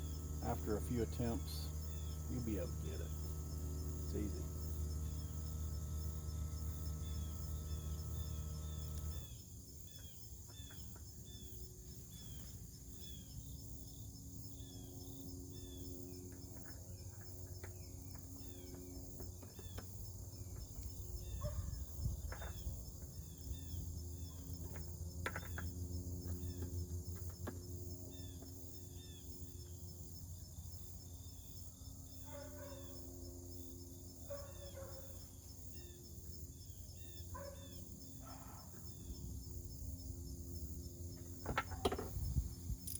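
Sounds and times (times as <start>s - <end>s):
birds chirping: 0.0s - 42.9s
insects buzzing: 0.0s - 42.9s.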